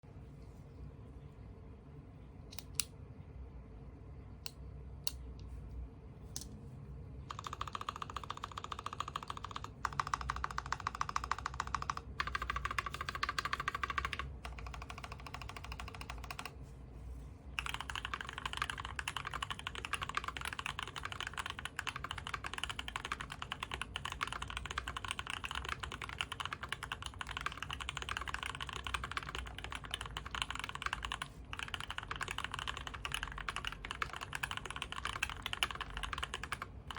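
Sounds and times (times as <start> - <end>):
typing on mechanical keyboard: 7.3 - 16.5, 17.6 - 36.9.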